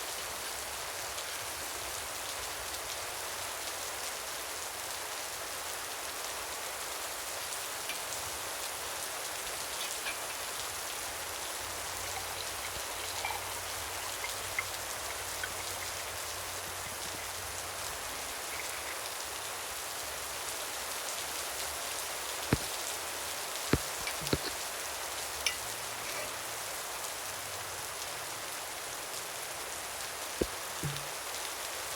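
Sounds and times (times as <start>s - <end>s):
steady rain falling: 0.0s - 31.9s
sharp knocks: 30.8s - 31.2s.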